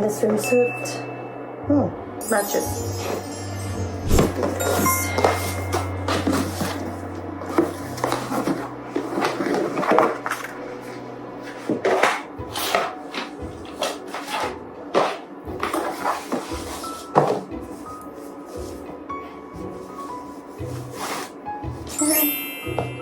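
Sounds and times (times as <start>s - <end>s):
soft background music: 0.0s - 23.0s
cardboard knocking: 4.1s - 10.5s, 11.5s - 17.8s
paper rustling and crinkling: 4.1s - 18.8s.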